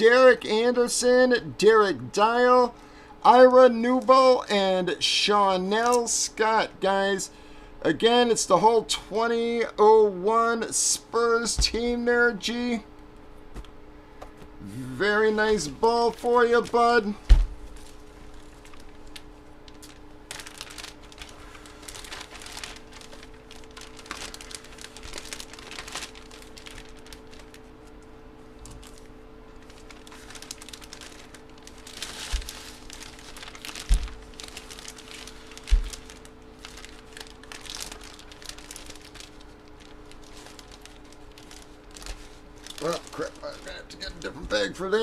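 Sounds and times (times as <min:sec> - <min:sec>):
plastic bag crinkling: 0:15.6 - 0:45.0.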